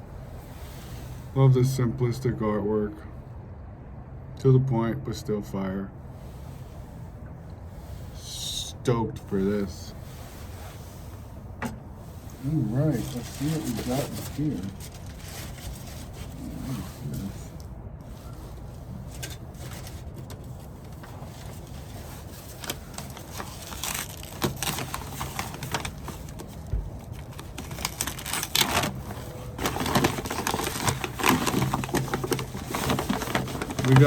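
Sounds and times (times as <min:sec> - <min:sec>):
low steady hum: 0:00.0 - 0:34.0
packaging rustling and crinkling: 0:12.1 - 0:34.0
bottles pulled from bubble wrap: 0:21.2 - 0:34.0.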